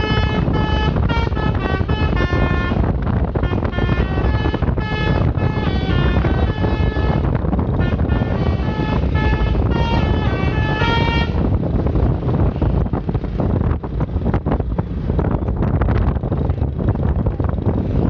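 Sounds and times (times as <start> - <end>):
musical horn tune: 0.0 - 2.8, 7.8 - 11.6
road noise: 0.0 - 18.0
wind on microphone: 0.0 - 18.0.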